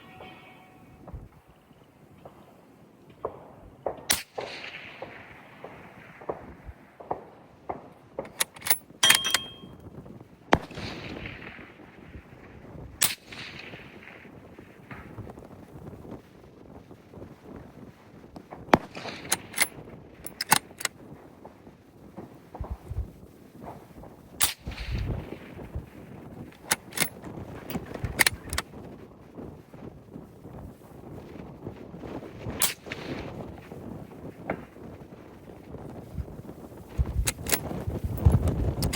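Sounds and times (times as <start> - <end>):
suppressed rifle shots with echo: 3.2 - 9.7, 10.5 - 11.8, 13.0 - 14.2, 18.7 - 21.0, 24.4 - 25.8, 32.6 - 33.7, 37.2 - 37.6
rifle bolt metallic clicks: 8.2 - 9.7, 18.8 - 20.9, 24.4 - 25.1, 26.6 - 28.6, 32.6 - 33.0, 37.0 - 38.9.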